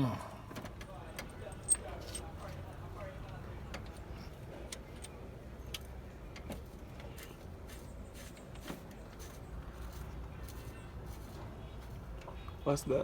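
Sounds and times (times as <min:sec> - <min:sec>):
light clicks and taps of parts: 0:00.5 - 0:10.0.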